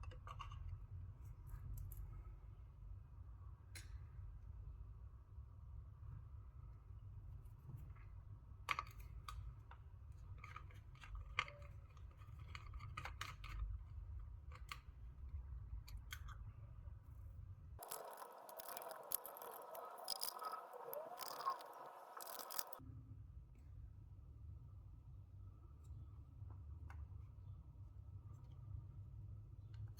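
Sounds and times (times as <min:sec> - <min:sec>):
rustling and scraping: 0:17.8 - 0:22.8
small parts clicking and tapping: 0:17.8 - 0:22.8.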